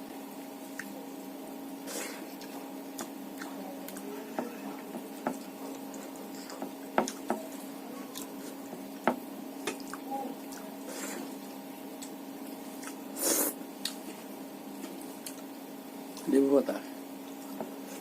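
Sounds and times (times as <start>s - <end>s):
steady low hum: 0.0s - 18.0s
wet chewing and mouth smacks: 2.2s - 4.0s, 9.6s - 10.7s, 12.0s - 13.0s, 13.8s - 14.2s, 14.8s - 15.5s.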